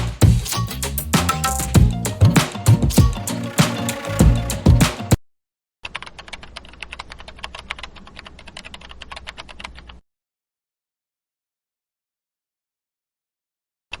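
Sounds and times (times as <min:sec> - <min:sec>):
background music: 0:00.0 - 0:05.2.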